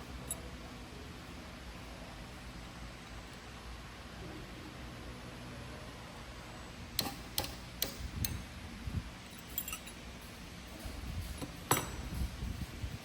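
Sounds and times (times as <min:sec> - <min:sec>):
light clinks: 0:00.2 - 0:00.5, 0:09.2 - 0:12.7.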